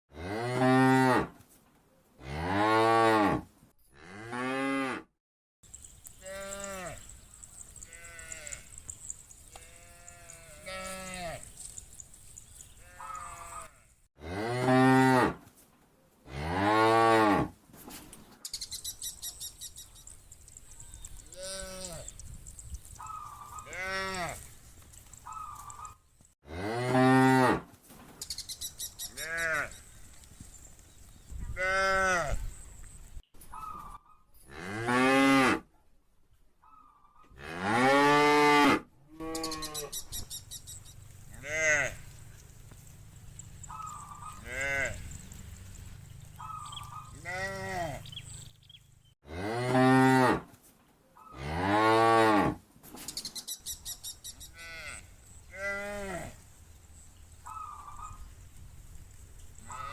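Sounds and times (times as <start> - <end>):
faint high chittering: 5.6 - 13.8
cows mooing: 6.2 - 11.5, 23.0 - 24.5, 41.3 - 42.2, 42.8 - 48.4.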